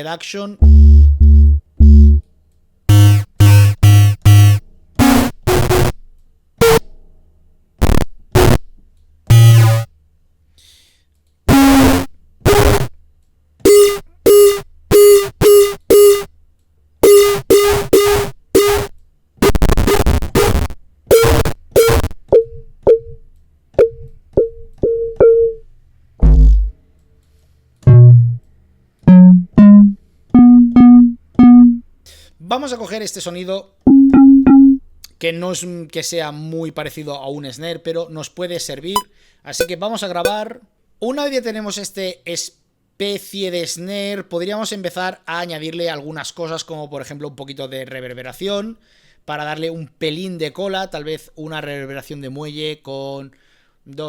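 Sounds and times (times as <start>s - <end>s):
synthetic feedback tone hits: 2.9s - 5.9s.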